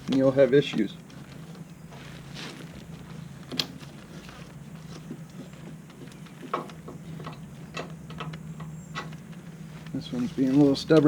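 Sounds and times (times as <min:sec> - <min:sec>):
steady low hum: 0:00.0 - 0:11.0
metallic clicks and clunks: 0:06.1 - 0:09.4.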